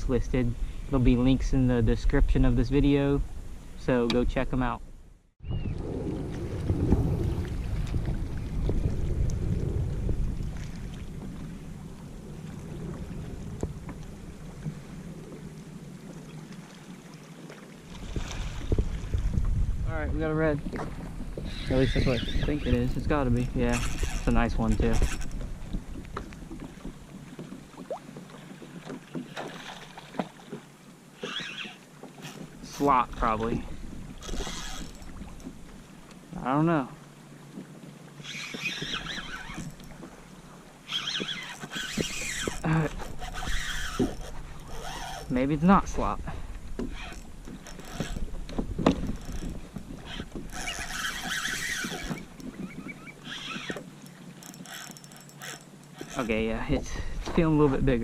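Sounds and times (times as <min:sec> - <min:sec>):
low wind rumble: 0:00.0 - 0:16.6, 0:17.8 - 0:27.8, 0:32.5 - 0:37.5, 0:41.8 - 0:53.8
faint water noise: 0:00.0 - 0:58.0.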